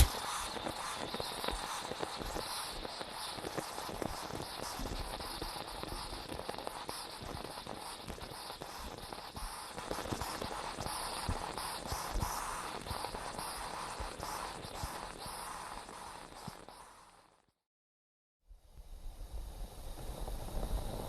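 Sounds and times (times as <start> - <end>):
steady hiss: 0.0 - 16.9, 18.7 - 21.0
moka pot sputtering and crackling: 0.0 - 17.4, 19.1 - 21.0.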